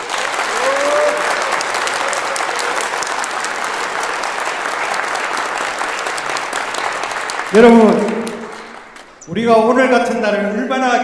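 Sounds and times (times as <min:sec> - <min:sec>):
audience applauding: 0:00.0 - 0:09.5.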